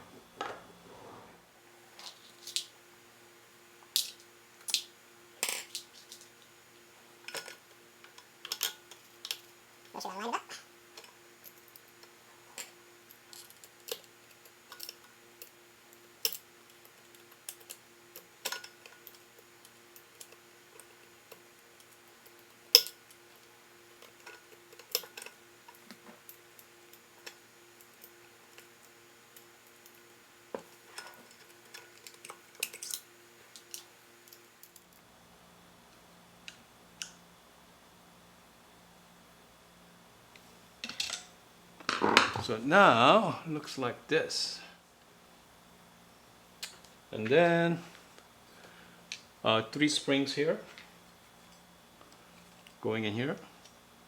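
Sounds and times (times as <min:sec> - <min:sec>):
faint steady hum: 0:00.0 - 0:54.0
metal parts clicking and tapping: 0:18.4 - 0:19.2, 0:20.0 - 0:28.7.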